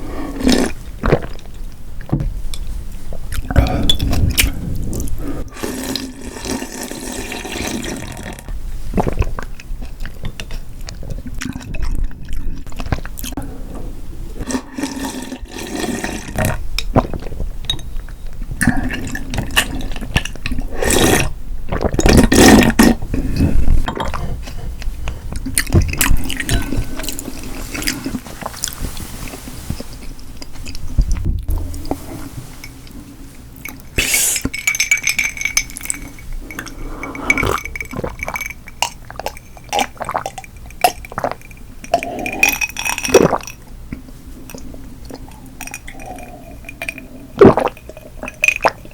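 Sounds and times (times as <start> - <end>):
noodle slurping: 3.6 - 9.3, 18.7 - 24.6, 33.9 - 34.6, 35.8 - 43.6, 44.5 - 48.9.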